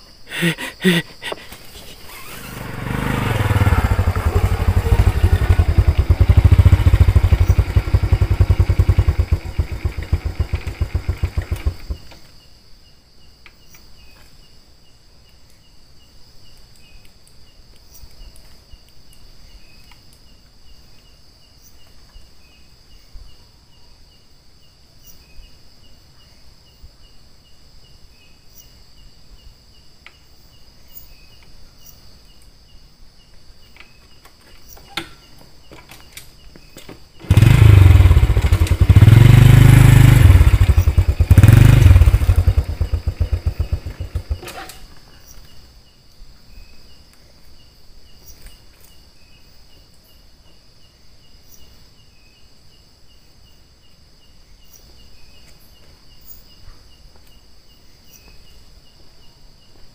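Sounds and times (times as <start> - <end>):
insects chirring: 0.0 - 59.9
small motorcycle engine running: 1.8 - 12.2, 37.2 - 44.9.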